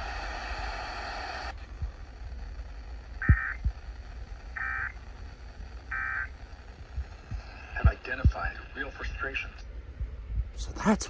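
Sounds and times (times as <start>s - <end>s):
low hum: 0.0s - 11.0s
two-tone digital data warble: 3.2s - 3.7s, 4.5s - 5.0s, 5.9s - 6.4s.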